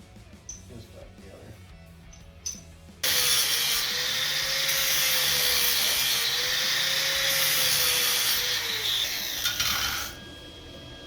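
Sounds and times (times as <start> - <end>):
electric grinder grinding metal: 3.0 - 10.6.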